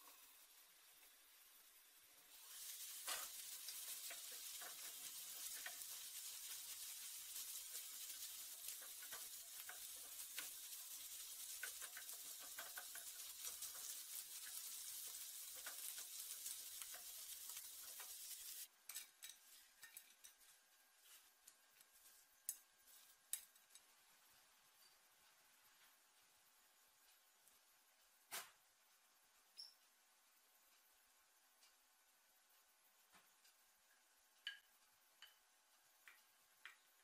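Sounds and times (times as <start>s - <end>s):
food sizzling in hot oil: 0.0s - 20.5s
utensil clicking in pan: 2.7s - 20.0s, 36.0s - 36.8s.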